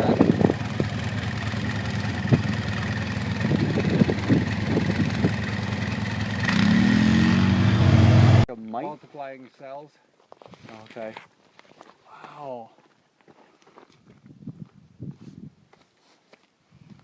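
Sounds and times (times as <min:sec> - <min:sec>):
atv engine running: 0:00.0 - 0:08.5.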